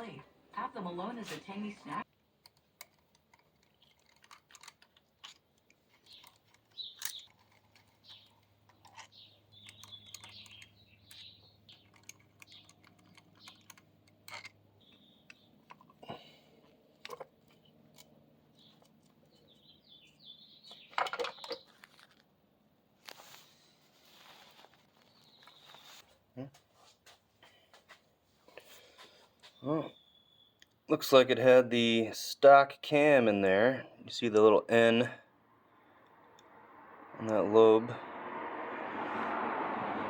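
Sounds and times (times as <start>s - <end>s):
metal parts clattering: 2.8s - 10.6s, 11.7s - 14.6s, 20.8s - 22.2s.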